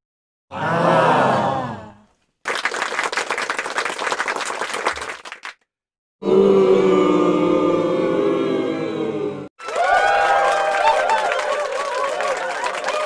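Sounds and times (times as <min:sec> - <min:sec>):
crowd cheering: 0:00.5 - 0:05.5, 0:06.2 - 0:13.0
crowd applauding: 0:02.4 - 0:05.6, 0:09.6 - 0:13.0.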